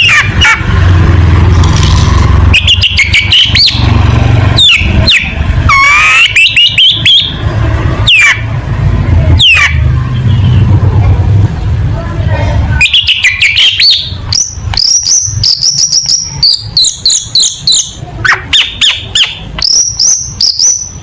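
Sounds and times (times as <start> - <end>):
shrike whistles and chatter: 2.5 - 3.9, 4.6 - 7.4, 9.3 - 10.8, 12.6 - 21.0.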